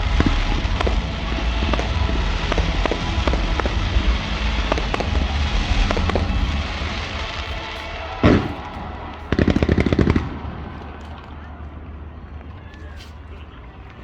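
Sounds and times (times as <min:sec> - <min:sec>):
loud firework bang: 0:00.0 - 0:11.0
sharp firework pops: 0:00.0 - 0:11.4
crackling firework reports: 0:00.0 - 0:14.0
fireworks rumbling: 0:00.0 - 0:14.0.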